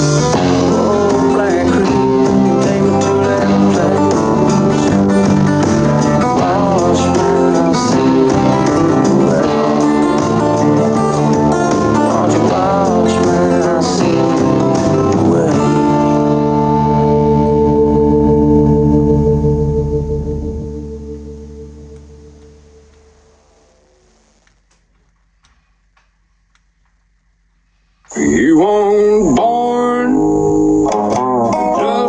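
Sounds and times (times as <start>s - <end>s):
guitar-led country-blues song: 0.0s - 22.7s, 28.1s - 32.0s.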